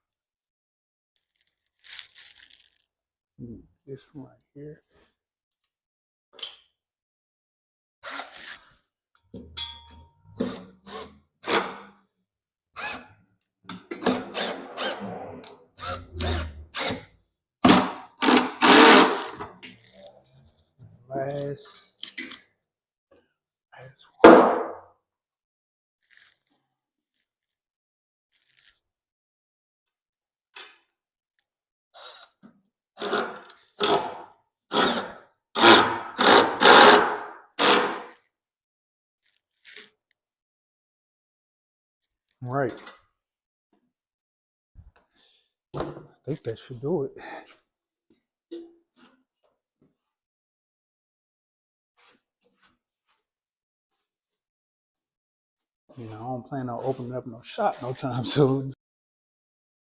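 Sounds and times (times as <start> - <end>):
power drill driving screws into wood: 14.0 - 15.0, 15.8 - 19.4, 33.0 - 38.2.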